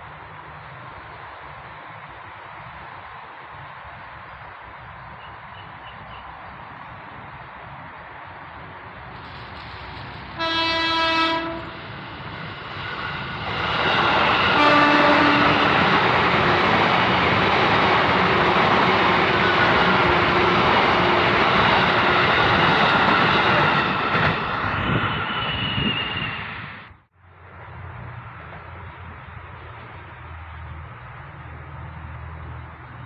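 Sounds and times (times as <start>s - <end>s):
train passing close by: 0.0s - 33.0s
train horn blasts: 10.4s - 11.8s, 14.5s - 15.9s.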